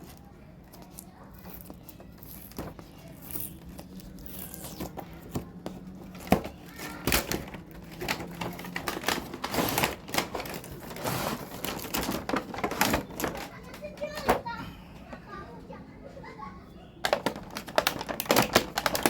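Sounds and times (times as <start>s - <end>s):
plastic packaging crinkling: 0.0s - 14.1s, 17.0s - 19.0s.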